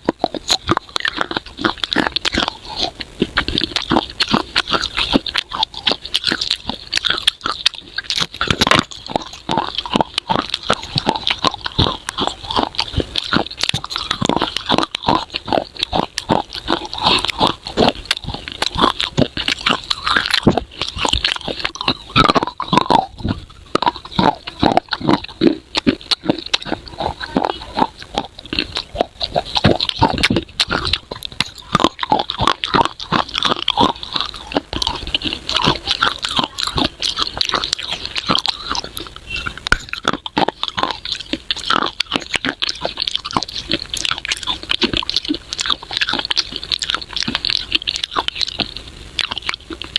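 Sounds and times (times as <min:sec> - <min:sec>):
crunchy chewing: 0:00.0 - 0:49.9.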